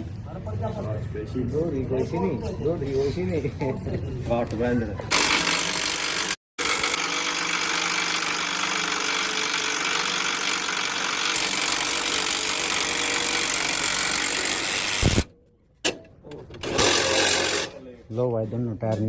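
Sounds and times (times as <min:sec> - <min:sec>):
power tool hammering rattle: 0:05.1 - 0:15.3, 0:16.6 - 0:17.7.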